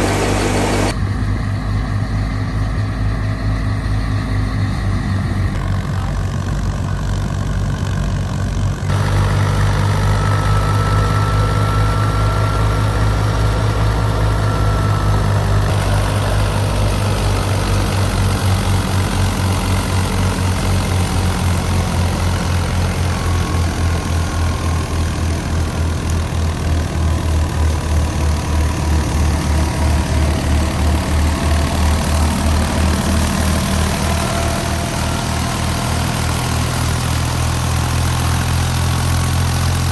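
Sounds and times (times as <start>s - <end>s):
thresher rushing noise: 0.0s - 1.3s, 8.9s - 39.1s
diesel tractor engine running: 0.0s - 39.9s.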